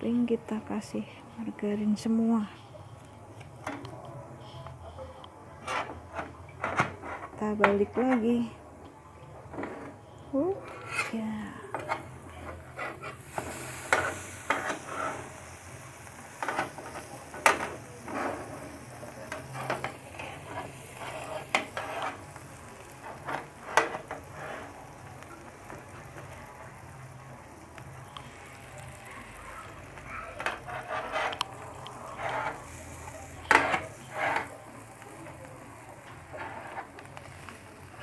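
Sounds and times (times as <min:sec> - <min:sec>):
utensil scraping and tapping pan: 0:05.6 - 0:08.2, 0:10.7 - 0:15.2, 0:16.4 - 0:18.7, 0:19.3 - 0:22.4, 0:23.0 - 0:24.8, 0:30.4 - 0:32.8, 0:33.4 - 0:34.6
bread sizzling in frying pan: 0:11.8 - 0:38.0.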